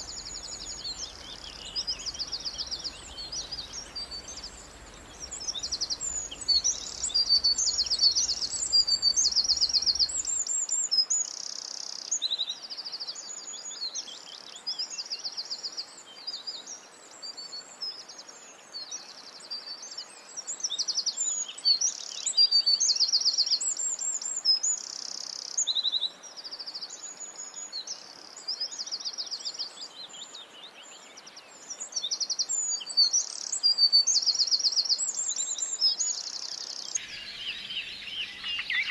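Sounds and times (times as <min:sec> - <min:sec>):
birds chirping and trilling: 0:00.0 - 0:10.5, 0:35.0 - 0:38.9.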